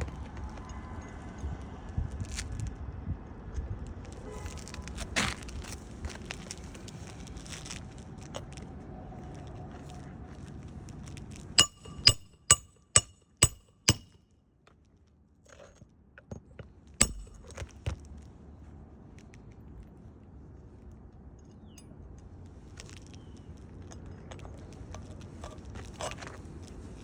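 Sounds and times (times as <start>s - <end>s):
hammer blows on metal: 11.6s - 14.1s, 17.0s - 17.5s.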